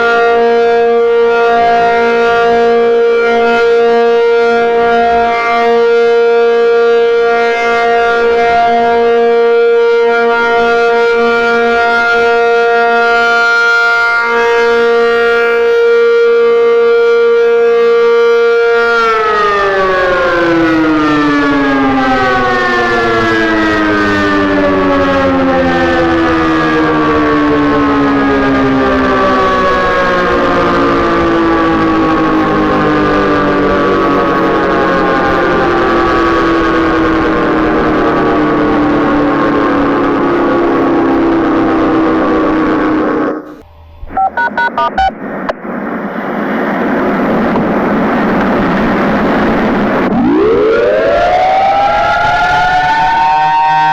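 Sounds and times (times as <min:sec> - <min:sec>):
warning siren winding down: 0:00.0 - 0:45.6, 0:48.7 - 0:53.9.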